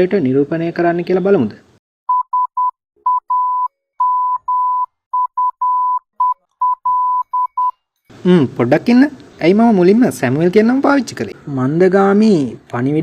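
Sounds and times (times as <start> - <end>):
morse code beeps: 2.1 - 7.8.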